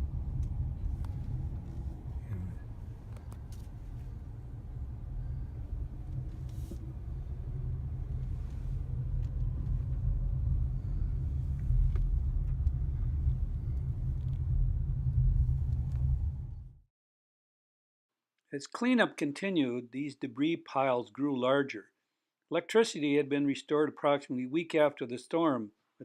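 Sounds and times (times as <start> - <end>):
car engine and tyres rumbling: 0.0 - 16.8.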